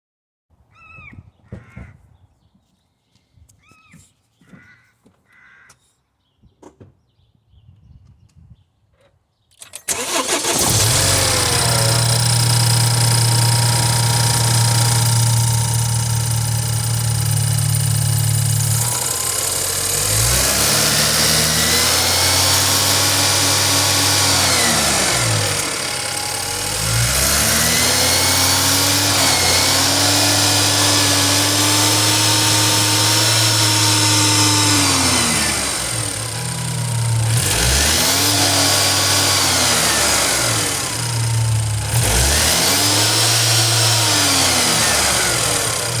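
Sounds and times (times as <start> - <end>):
car engine revving: 9.8 - 46.0
engine idling: 9.8 - 46.0.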